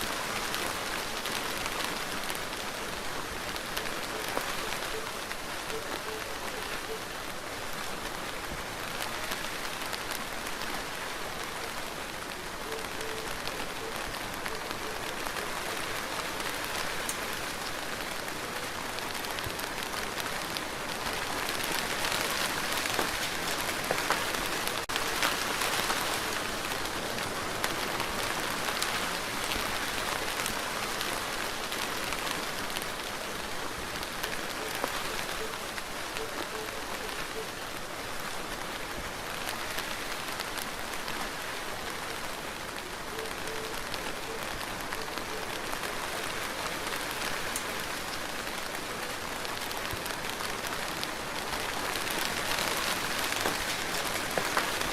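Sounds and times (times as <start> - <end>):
rain pattering on a surface: 0.0 - 54.9.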